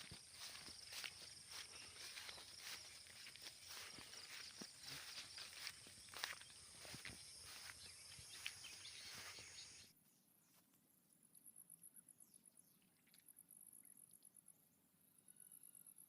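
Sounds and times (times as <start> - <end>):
insect chirping: 0.0 - 9.9.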